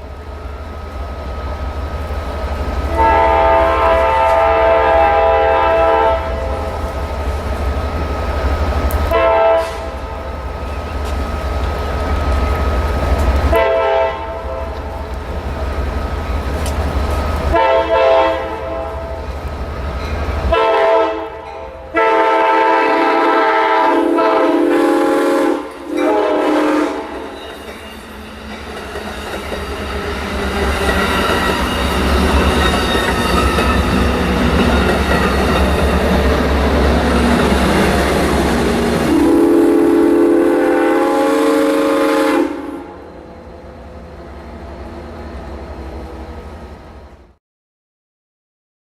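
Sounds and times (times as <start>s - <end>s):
train wheels on rails: 0.0s - 47.2s
locomotive air horn blasts: 2.9s - 6.8s, 9.1s - 10.2s, 13.5s - 14.8s, 17.5s - 19.2s, 20.5s - 27.3s, 38.9s - 43.1s.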